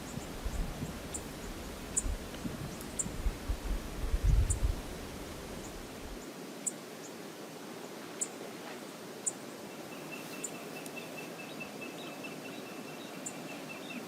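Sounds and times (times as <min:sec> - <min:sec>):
wind buffeting microphone: 0:00.0 - 0:06.2.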